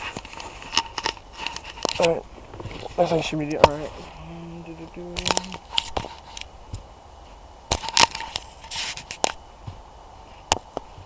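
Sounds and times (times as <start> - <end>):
brief rustle: 0.0 - 4.2, 7.7 - 9.4.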